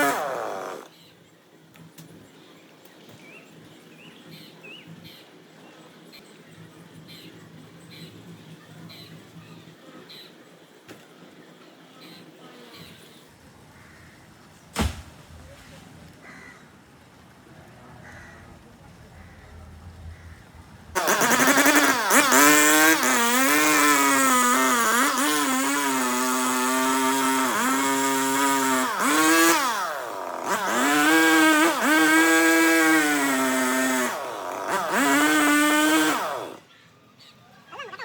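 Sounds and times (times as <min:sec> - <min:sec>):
chainsaw cutting wood: 0:00.0 - 0:00.9, 0:21.0 - 0:36.6.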